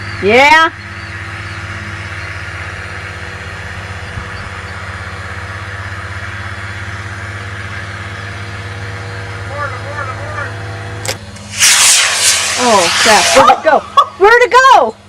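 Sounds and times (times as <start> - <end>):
engine idling: 0.0 - 11.6, 12.4 - 15.0.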